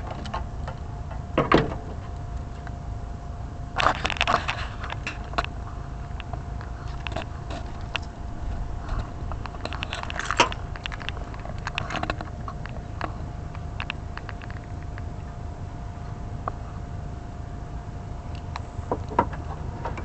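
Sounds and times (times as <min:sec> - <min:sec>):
car engine running with whine: 0:00.0 - 0:20.0.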